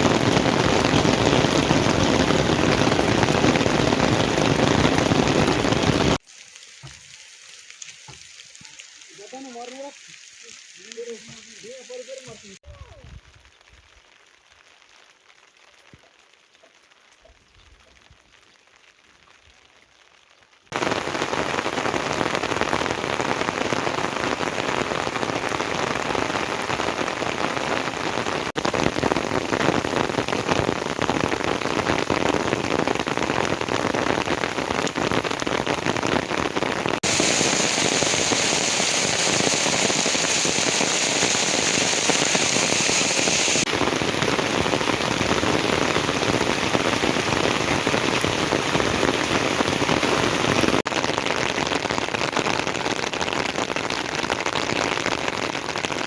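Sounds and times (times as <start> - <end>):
heavy rain hissing: 0.0 - 13.4, 20.8 - 56.0.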